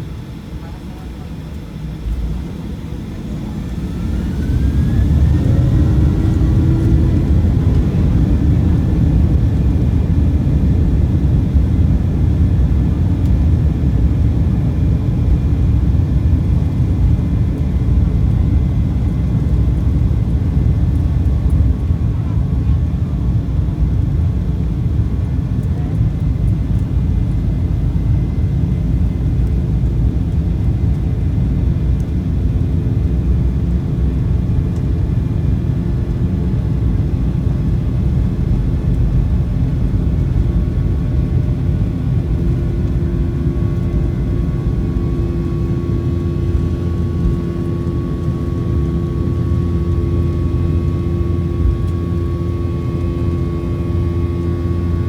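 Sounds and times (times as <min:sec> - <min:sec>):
aircraft cabin engine drone: 0:00.0 - 0:55.0
steady higher hum: 0:37.7 - 0:55.0.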